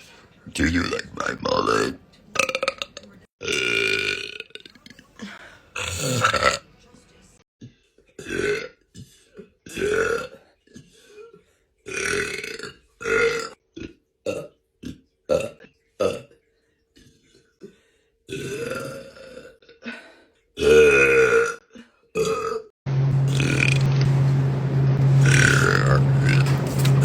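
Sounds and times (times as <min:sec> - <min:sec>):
woman belching: 0:02.4 - 0:05.0, 0:05.8 - 0:06.6, 0:08.2 - 0:08.8, 0:11.9 - 0:16.3, 0:18.3 - 0:19.8, 0:20.6 - 0:22.7.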